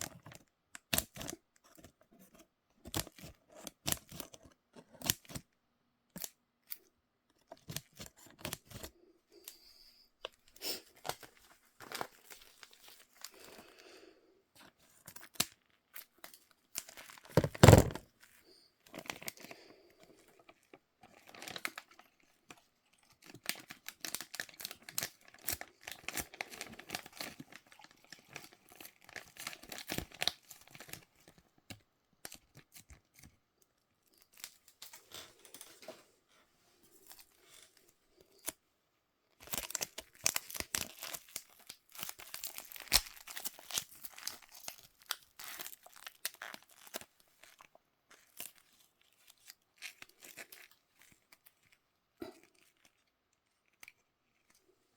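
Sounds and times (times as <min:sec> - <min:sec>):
packaging tearing and crinkling: 0:16.8 - 0:18.0, 0:39.4 - 0:51.2.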